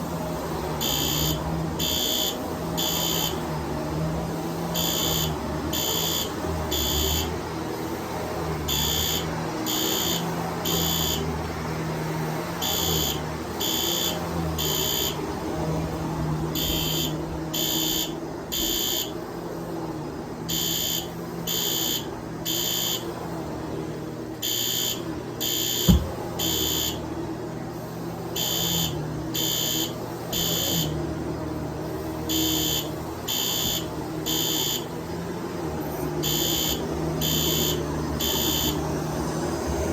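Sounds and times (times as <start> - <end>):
alarm horn blasts: 0.0 - 19.5, 20.4 - 23.3, 24.4 - 27.2, 28.3 - 31.2, 32.0 - 39.3
vacuum cleaner running: 0.0 - 39.9
thump: 25.9 - 26.2.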